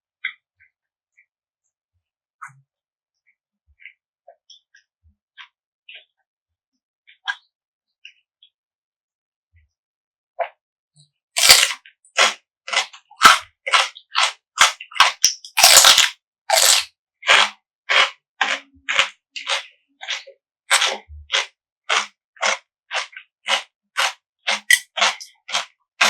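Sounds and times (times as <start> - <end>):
chewing crunchy food: 11.4 - 26.0.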